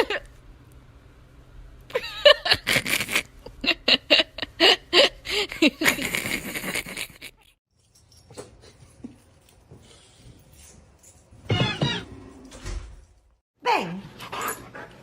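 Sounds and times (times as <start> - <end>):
person laughing hard: 1.9 - 7.5.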